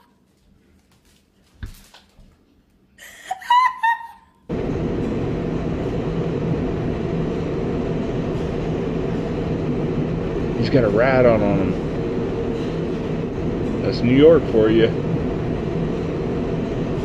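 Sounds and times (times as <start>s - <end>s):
high squeaky laugh-like sounds: 3.0s - 4.4s
moving vehicle rumbling: 4.5s - 17.0s.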